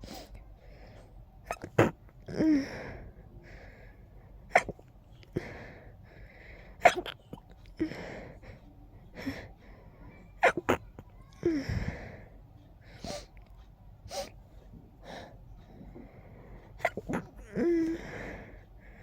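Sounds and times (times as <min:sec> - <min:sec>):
person sneezing: 0:04.5 - 0:04.8, 0:06.8 - 0:07.2
breathy sounds: 0:11.3 - 0:13.4, 0:15.0 - 0:19.0.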